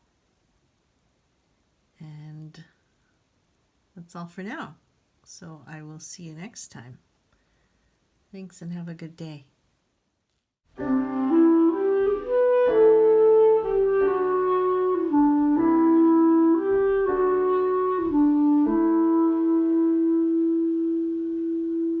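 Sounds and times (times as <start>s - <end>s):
slow reedy woodwind melody: 10.7s - 22.0s.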